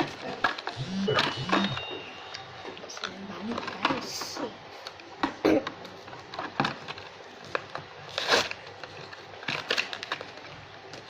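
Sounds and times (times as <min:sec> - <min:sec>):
plastic and cardboard crackling: 0:00.0 - 0:11.0
tearing crackles: 0:08.0 - 0:10.6.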